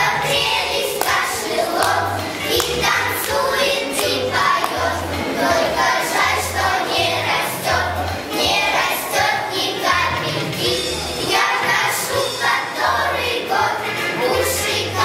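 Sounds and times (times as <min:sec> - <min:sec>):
children singing: 0:00.0 - 0:15.0
musical accompaniment: 0:00.0 - 0:15.0.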